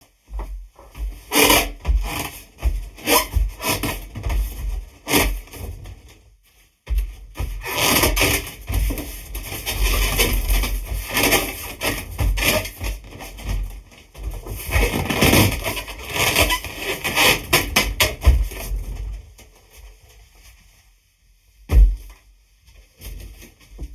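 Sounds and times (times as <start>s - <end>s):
balloon squeaking and rubbing: 1.3s - 2.4s, 3.0s - 4.1s, 7.6s - 8.5s, 14.7s - 18.0s.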